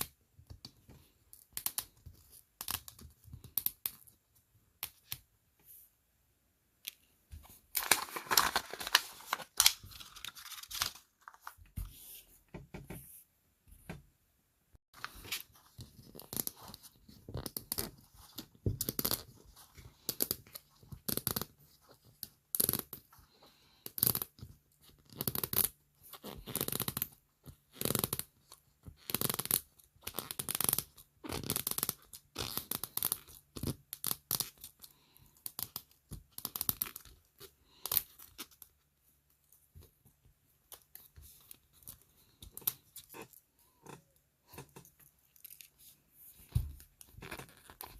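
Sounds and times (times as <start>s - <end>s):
wrappers ripping and crinkling: 7.8s - 11.5s.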